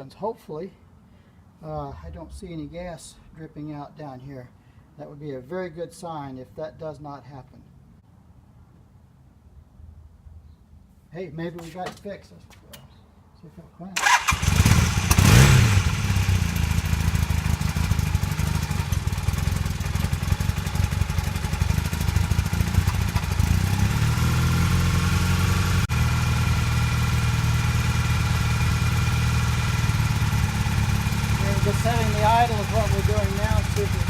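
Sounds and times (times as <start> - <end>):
motorcycle engine idling rough: 14.0 - 34.0.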